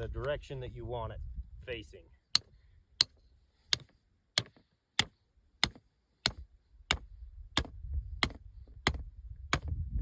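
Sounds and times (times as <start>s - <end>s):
hammer striking a stake: 2.3s - 9.8s.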